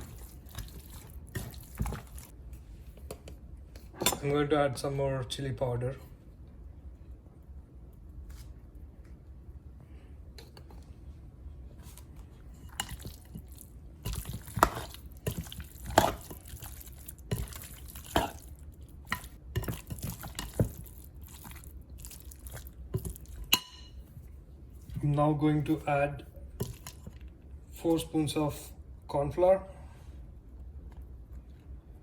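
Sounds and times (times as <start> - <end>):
chicken wings squelching in marinade: 12.8 - 23.4.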